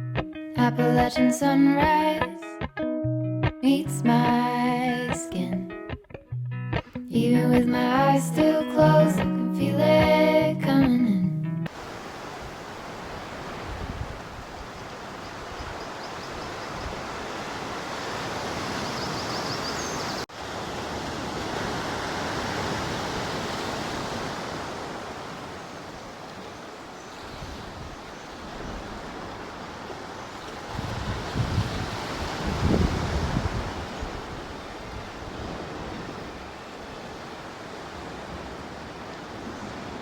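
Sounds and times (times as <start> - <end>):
sea surf: 0.6 - 2.5, 3.6 - 5.8, 7.2 - 40.0
wind: 11.6 - 40.0.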